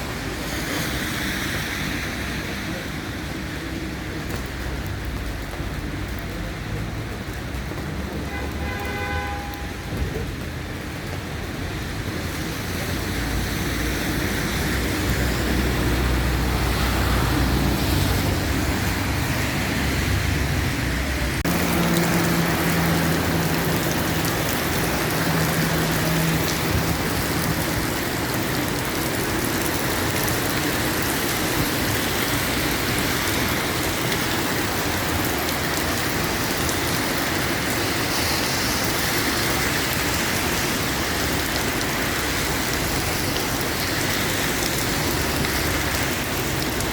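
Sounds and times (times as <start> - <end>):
steady rain falling: 0.0 - 46.9
vehicle engine rumble: 9.7 - 46.9.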